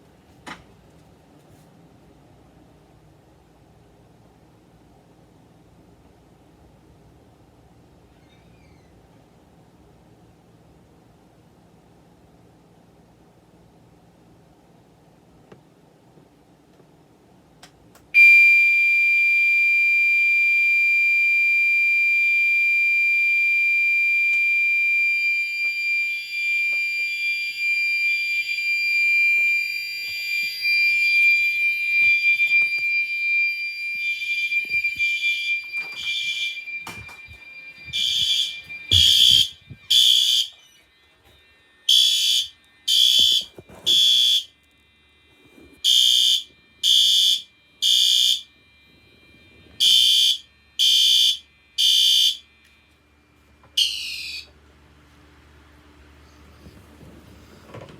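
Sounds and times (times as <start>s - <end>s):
fire alarm short beeps: 18.1s - 53.0s, 53.7s - 54.5s
fire alarm tone: 18.1s - 54.6s.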